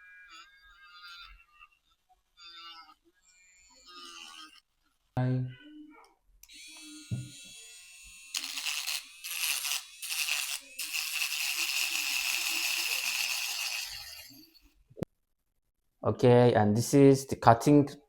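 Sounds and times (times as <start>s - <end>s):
rotary tool grinding wood: 0.0s - 5.2s, 6.5s - 14.8s
rotary tool whining: 0.0s - 5.8s, 6.4s - 14.8s.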